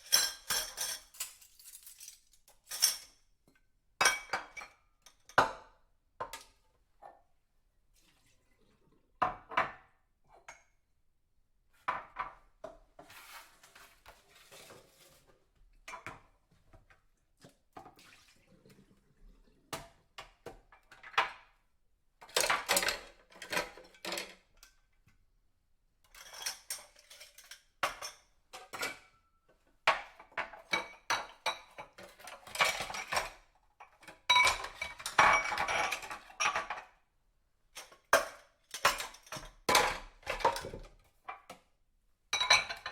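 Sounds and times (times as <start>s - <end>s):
dishes and cutlery clinking: 0.0s - 3.2s, 22.2s - 24.6s, 26.1s - 29.2s, 29.9s - 37.0s, 37.8s - 41.5s, 42.4s - 42.9s.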